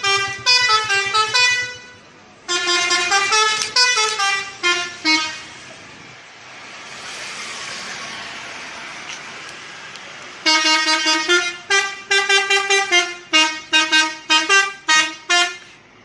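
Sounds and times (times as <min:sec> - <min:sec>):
multi-tone bus horn jingle: 0:00.0 - 0:05.6, 0:10.4 - 0:15.9
passing vehicle noise: 0:00.0 - 0:16.0.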